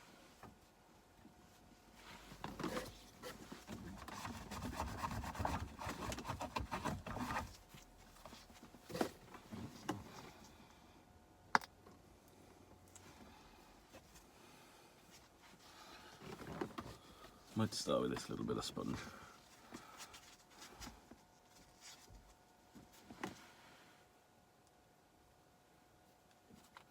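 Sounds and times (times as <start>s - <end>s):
scratchy handling noise: 2.2s - 10.0s.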